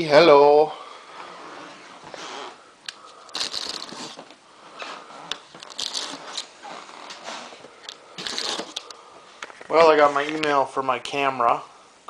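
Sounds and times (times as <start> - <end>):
rustling and crinkling: 3.0 - 10.6.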